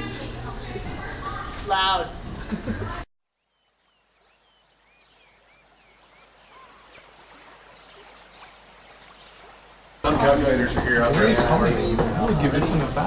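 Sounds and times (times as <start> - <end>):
flowing water: 0.0 - 13.0
high bird chirps: 3.3 - 9.6.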